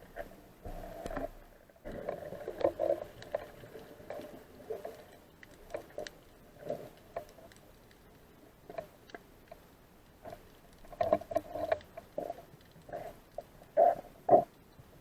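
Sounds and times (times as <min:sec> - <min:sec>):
underwater clicks and knocks: 0:10.2 - 0:13.5.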